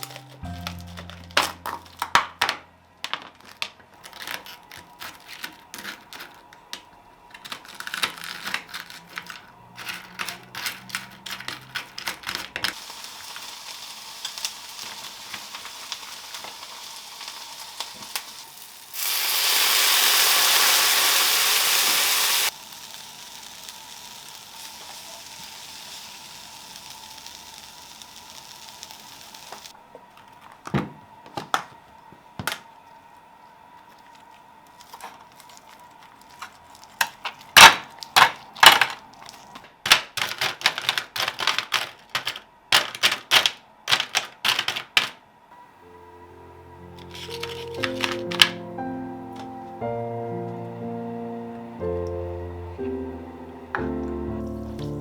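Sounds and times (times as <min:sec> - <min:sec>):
utensils clicking and knocking: 0:00.0 - 0:12.8, 0:36.1 - 0:45.2, 0:47.0 - 0:48.7
food sizzling in a pan: 0:12.7 - 0:29.8.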